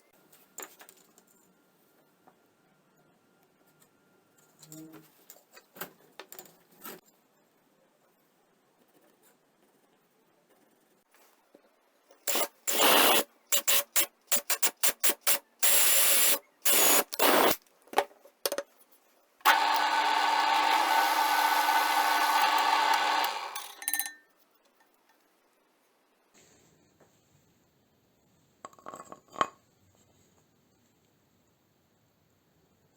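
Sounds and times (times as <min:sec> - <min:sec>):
power tool running: 0:19.5 - 0:23.8.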